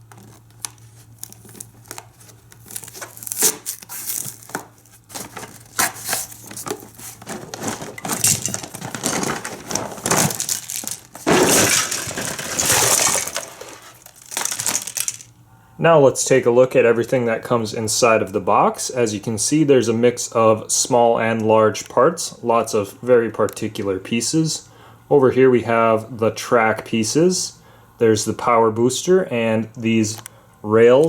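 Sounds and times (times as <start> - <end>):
cardboard box being opened: 0.0 - 12.3
packaging crinkling and tearing: 0.0 - 15.2
small plastic pieces clicking: 8.2 - 15.3.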